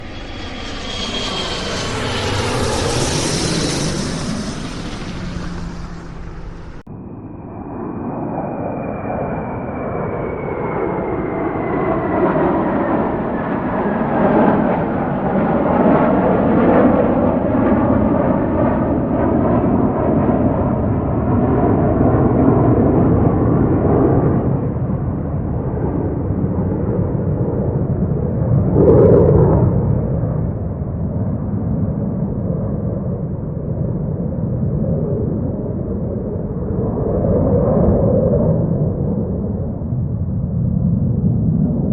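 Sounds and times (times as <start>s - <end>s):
high whine gliding down: 0.0s - 13.8s
airplane engines roaring: 0.0s - 41.9s.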